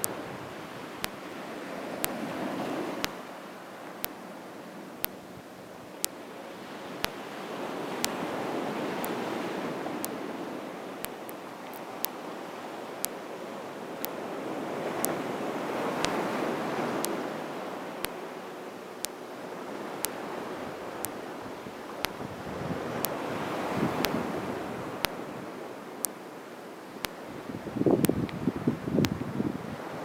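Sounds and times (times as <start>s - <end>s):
sharp short ticks: 1.0s - 1.4s, 11.0s - 12.2s, 16.0s - 16.2s.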